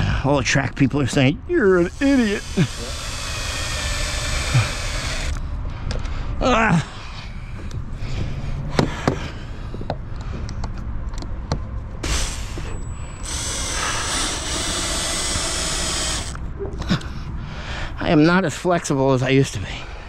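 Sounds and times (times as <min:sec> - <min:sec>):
steady low rumble: 0:00.0 - 0:20.0
power drill running: 0:01.7 - 0:05.4, 0:12.0 - 0:16.4.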